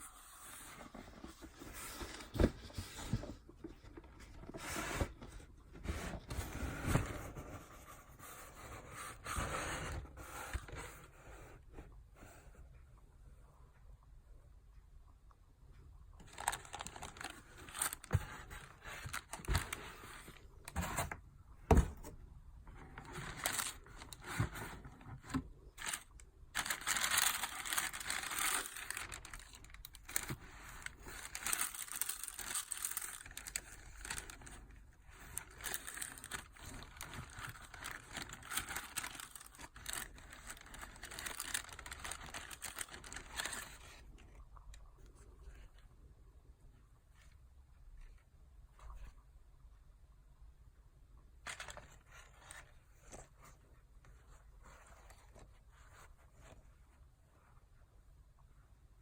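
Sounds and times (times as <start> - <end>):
paper rustling: 16.2 - 22.0, 22.7 - 44.4, 51.4 - 56.6
paper crinkling and tearing: 16.3 - 20.8, 23.0 - 24.7, 25.3 - 44.1.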